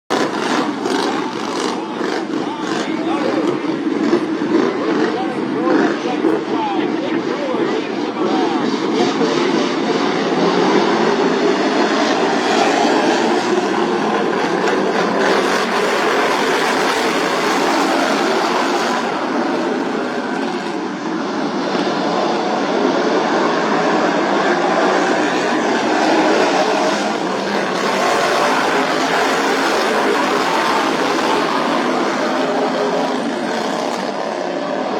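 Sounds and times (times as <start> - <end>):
racing lawn mower engines: 0.1 - 34.9.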